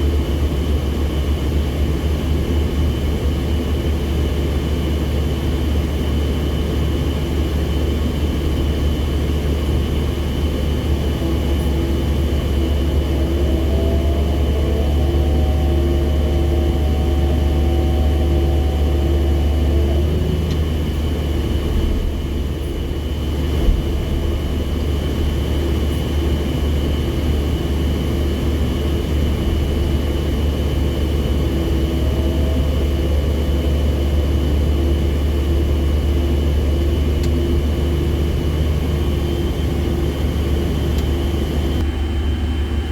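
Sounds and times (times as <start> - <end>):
diesel engine rumbling: 0.0 - 42.9
rising whine: 11.2 - 22.3.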